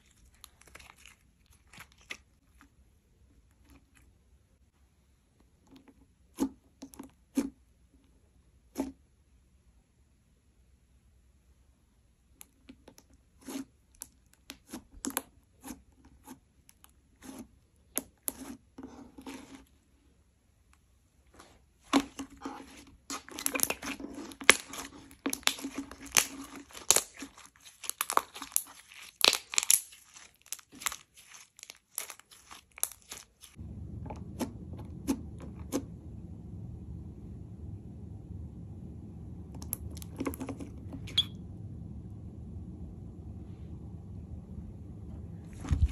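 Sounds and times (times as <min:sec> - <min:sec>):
slime clicking pops and crackles: 0:29.2 - 0:30.0
steady low hum: 0:33.6 - 0:45.9.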